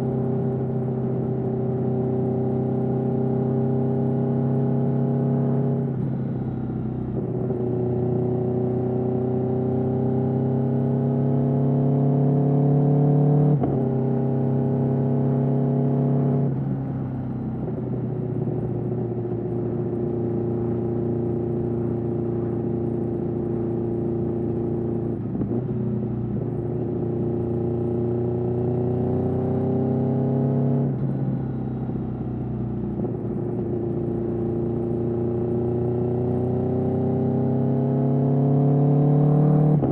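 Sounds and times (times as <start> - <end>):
motorcycle engine running: 16.7 - 30.0, 30.9 - 37.4.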